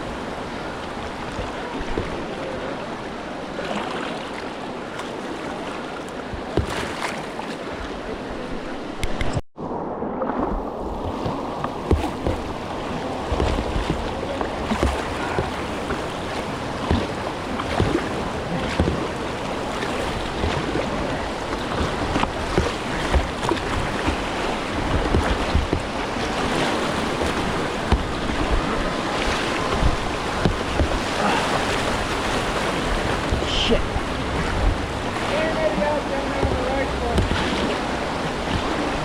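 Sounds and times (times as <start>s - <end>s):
river water rushing: 0.0s - 9.1s, 10.3s - 39.0s
short splashes and knocks: 6.2s - 7.6s, 10.9s - 39.0s
wind rumble on microphone: 7.8s - 39.0s.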